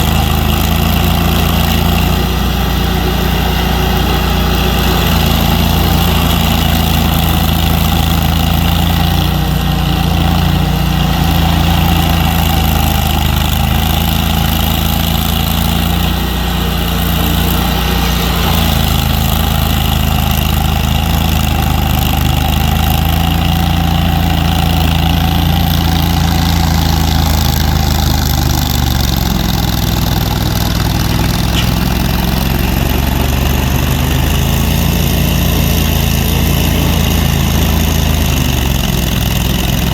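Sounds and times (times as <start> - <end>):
large engine running: 0.0 - 39.9.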